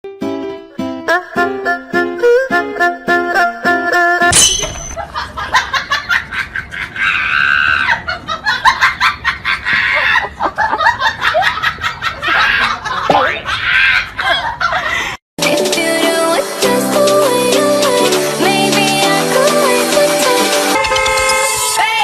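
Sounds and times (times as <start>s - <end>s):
people laughing and shrieking: 6.7s - 8.8s, 9.4s - 15.0s.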